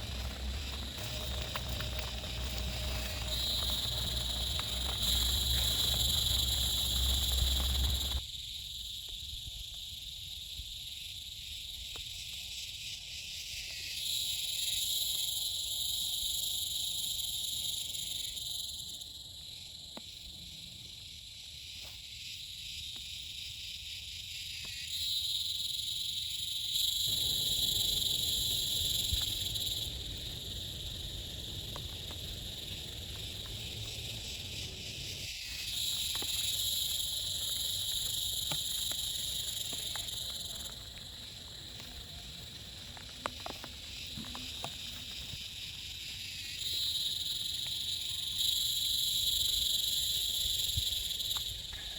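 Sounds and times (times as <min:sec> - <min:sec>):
low rumble: 0:00.0 - 0:08.2
insects chirring: 0:00.0 - 0:51.9.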